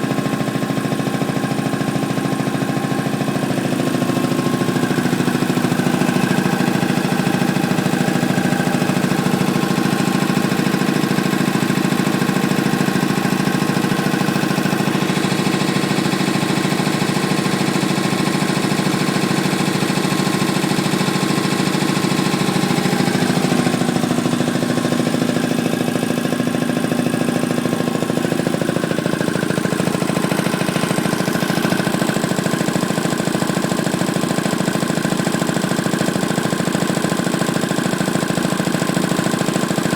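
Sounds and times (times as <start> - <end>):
air compressor running: 0.0 - 39.9.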